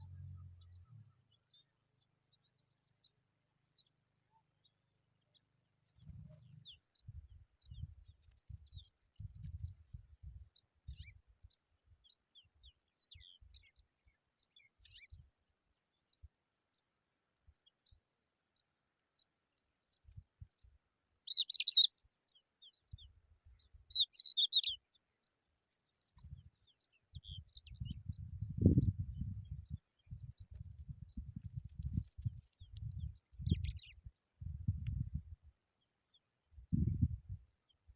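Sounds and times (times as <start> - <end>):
bird chirping: 0.0 - 9.6, 10.5 - 16.9, 21.2 - 34.1.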